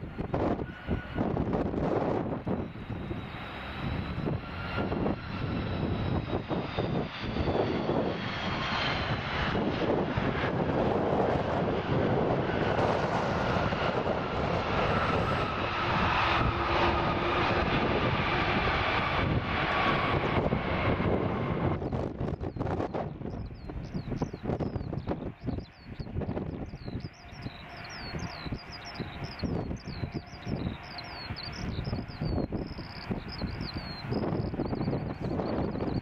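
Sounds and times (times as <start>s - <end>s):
jet engines passing: 0.0s - 36.0s
wind buffeting microphone: 0.0s - 36.0s.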